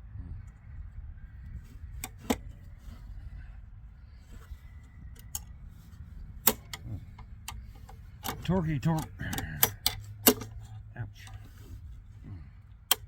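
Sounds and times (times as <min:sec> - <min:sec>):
low background rumble: 0:00.0 - 0:13.0
metallic clicks of hand tools: 0:06.4 - 0:11.4.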